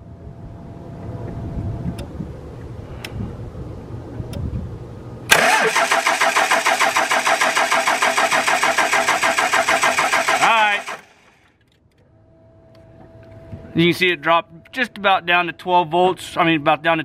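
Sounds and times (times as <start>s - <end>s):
diesel engine starter cranking: 5.3s - 11.5s.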